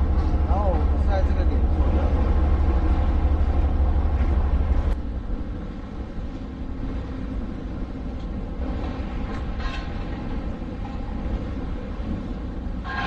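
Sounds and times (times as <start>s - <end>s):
wind rumbling on microphone: 0.0s - 13.0s.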